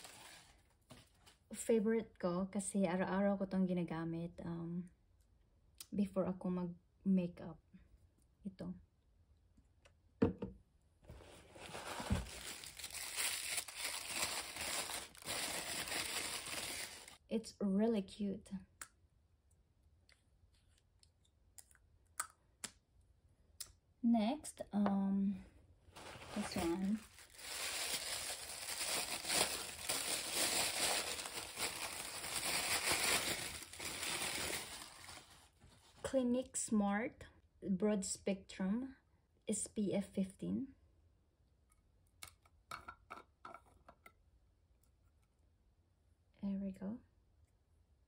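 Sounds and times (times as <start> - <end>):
packaging crinkling and tearing: 0.0 - 1.2, 11.4 - 17.2, 26.0 - 35.5.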